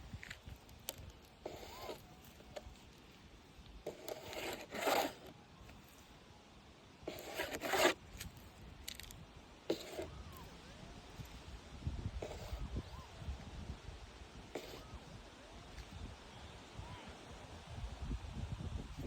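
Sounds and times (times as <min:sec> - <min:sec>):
scraping in gravelly ground: 0:00.0 - 0:06.2, 0:07.1 - 0:11.4.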